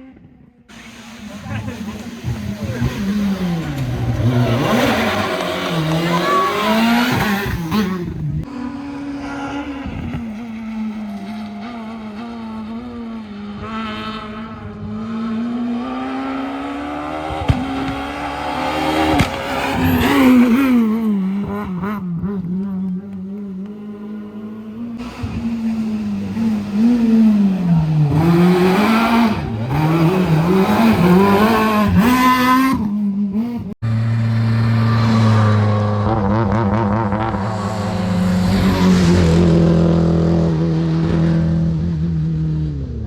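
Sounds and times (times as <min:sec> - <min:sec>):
rally car engine revving: 0:00.2 - 0:43.0.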